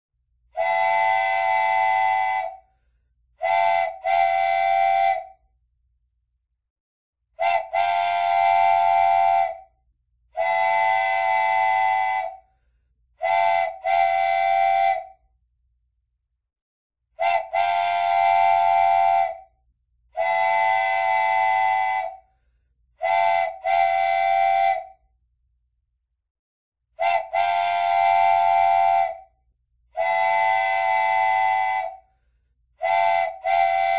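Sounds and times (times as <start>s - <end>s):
toy train whistle blasts: 0.6s - 2.7s, 3.4s - 5.4s, 7.4s - 9.7s, 10.4s - 12.5s, 13.2s - 15.2s, 17.2s - 19.5s, 20.2s - 22.2s, 23.0s - 25.0s, 27.0s - 29.3s, 30.0s - 32.1s, 32.8s - 33.9s.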